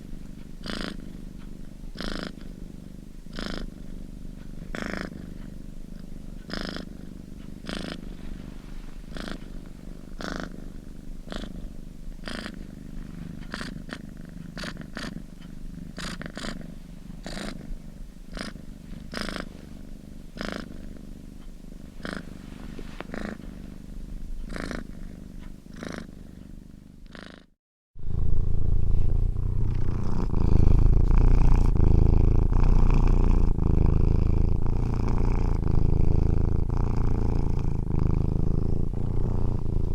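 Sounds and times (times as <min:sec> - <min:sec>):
cat purring: 0:00.0 - 0:39.9.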